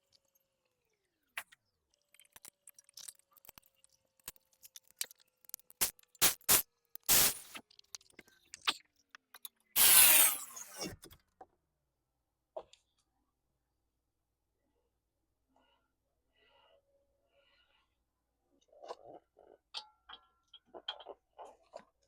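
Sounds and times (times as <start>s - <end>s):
small metal clicks and taps: 1.4s - 6.2s
short noisy bursts: 6.2s - 7.6s.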